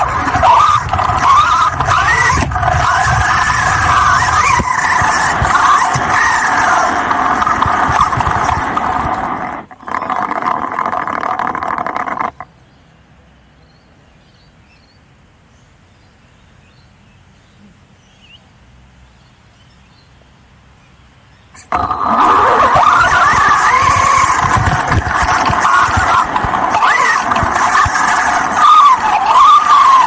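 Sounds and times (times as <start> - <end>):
remote-controlled car running: 0.0 - 12.4, 21.6 - 30.0
faint bird chirps: 12.4 - 20.2.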